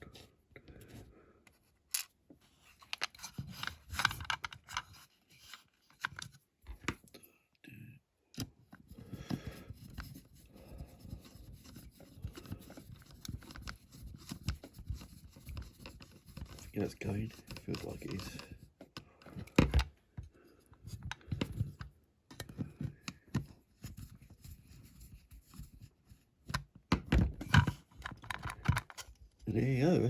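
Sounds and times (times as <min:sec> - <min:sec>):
scraping and clicking: 0:11.2 - 0:19.6.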